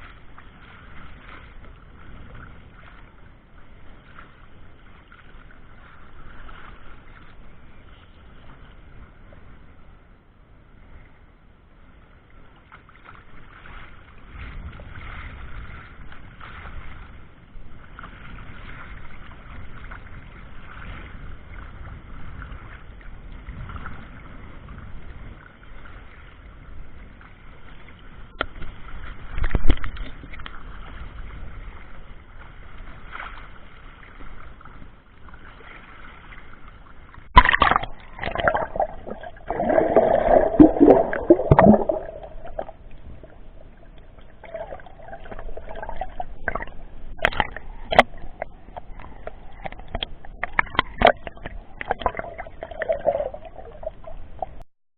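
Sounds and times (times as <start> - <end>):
muffled waves sloshing: 0.0 - 54.6
water splashing: 12.4 - 23.0, 25.5 - 54.6.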